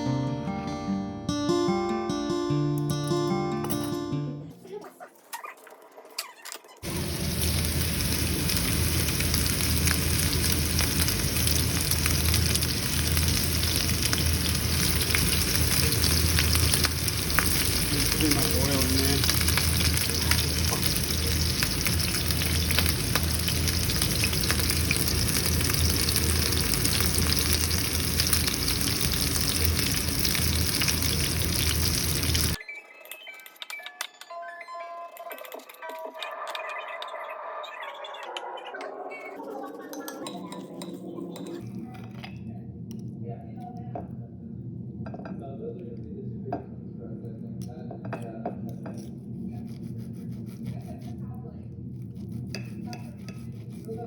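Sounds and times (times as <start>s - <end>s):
steak sizzling in a pan: 6.8s - 32.6s.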